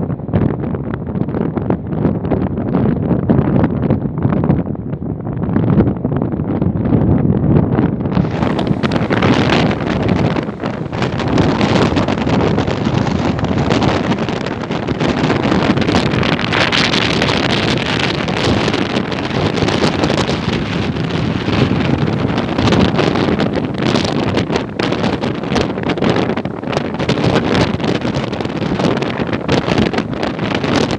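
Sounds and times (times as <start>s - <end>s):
strong wind buffeting microphone: 0.0s - 30.9s.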